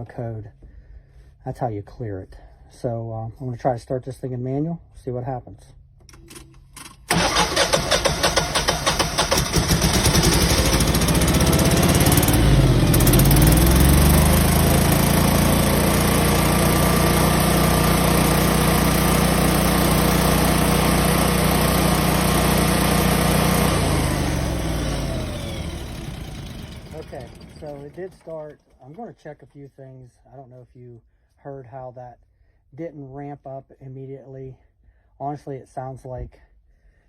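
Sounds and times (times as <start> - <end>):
generator engine cranking and running: 6.2 - 29.0.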